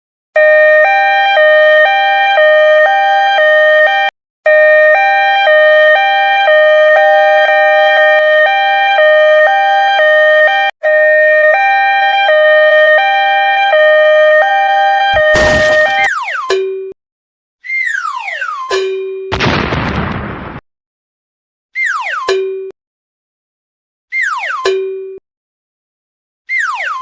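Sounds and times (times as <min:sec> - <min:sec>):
two-tone ambulance siren: 0:00.4 - 0:17.0, 0:17.7 - 0:18.8, 0:26.5 - 0:27.0.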